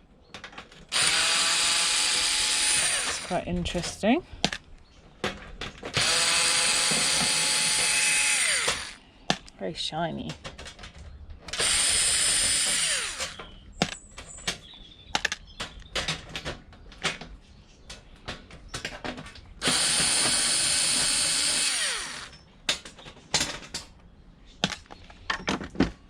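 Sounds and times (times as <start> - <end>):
clicks of plastic parts and screws: 0.3 - 9.6, 10.2 - 26.0
power drill whining: 0.9 - 3.4, 5.9 - 9.0, 11.5 - 13.5, 19.6 - 22.4.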